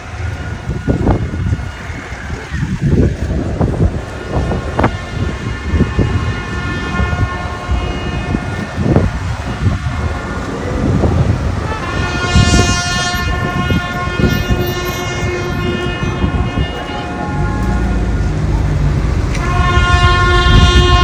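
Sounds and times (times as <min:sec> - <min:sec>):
wind noise rumble: 0:00.0 - 0:21.0
horn chord: 0:19.3 - 0:21.0.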